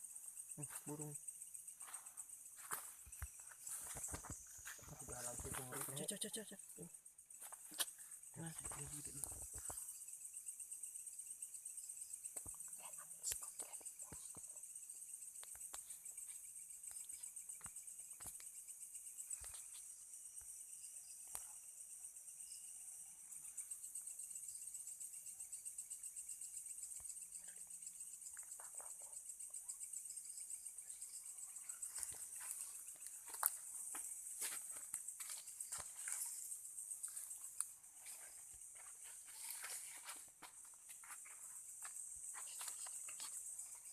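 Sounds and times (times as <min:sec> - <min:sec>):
insects trilling: 0:00.0 - 0:43.9
lower insect trill: 0:00.0 - 0:43.9.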